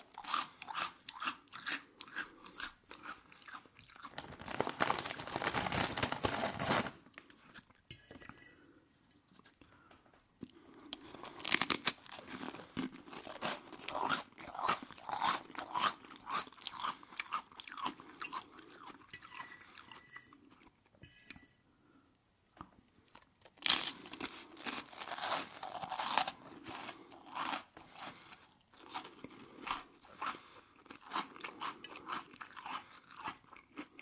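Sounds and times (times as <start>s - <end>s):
chewing: 0.2s - 4.4s, 12.2s - 20.8s.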